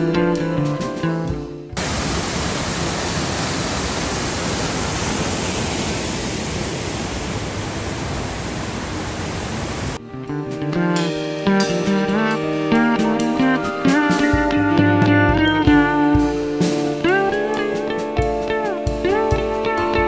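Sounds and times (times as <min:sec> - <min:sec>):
guitar music: 0:00.0 - 0:01.8, 0:10.0 - 0:20.0
waterfall rushing: 0:01.8 - 0:10.0.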